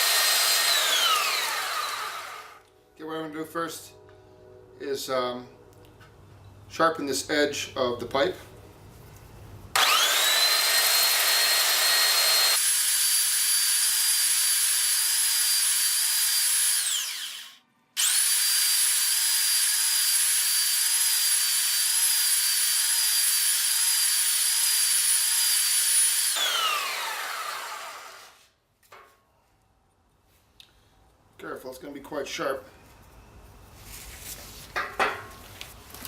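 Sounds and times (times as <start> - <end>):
electric sander grinding metal: 0.0 - 2.6, 9.8 - 28.3.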